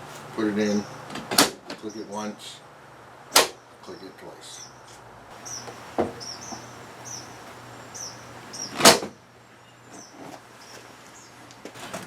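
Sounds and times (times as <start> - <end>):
steady low hum: 2.0 - 10.0
loud metal clunk: 8.7 - 9.2.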